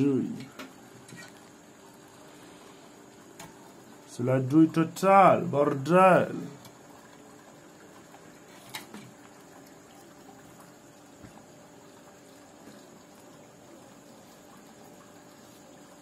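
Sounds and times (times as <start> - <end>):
faint high whine: 0.0 - 16.0
low background hiss: 0.0 - 16.0.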